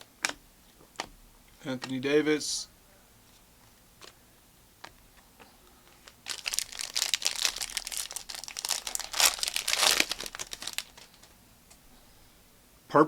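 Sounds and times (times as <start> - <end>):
card pack wrapper crinkling: 5.8 - 11.4.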